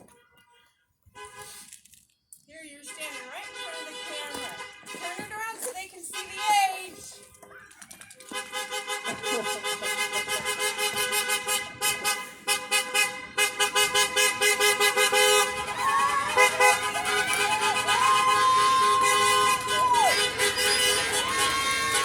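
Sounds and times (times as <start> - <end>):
car horns honking: 0.0 - 1.6, 2.7 - 7.2, 8.3 - 22.0
cars driving past: 8.4 - 22.0.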